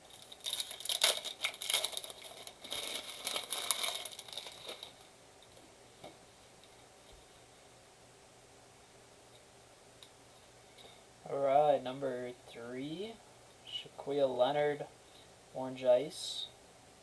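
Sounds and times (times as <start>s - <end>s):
packaging crinkling and tearing: 0.0s - 5.1s.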